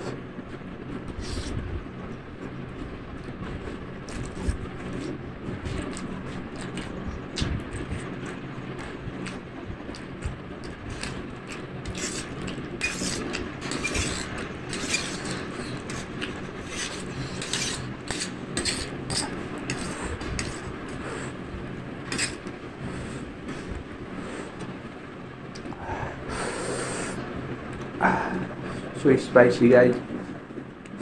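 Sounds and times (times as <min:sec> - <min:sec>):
person slurping and chewing noodles: 0:01.1 - 0:01.7, 0:03.2 - 0:23.8.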